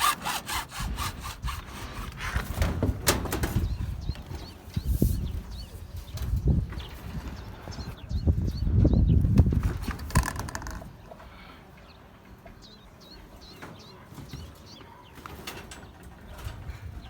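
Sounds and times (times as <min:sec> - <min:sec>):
small birds chirping: 0:03.4 - 0:17.0.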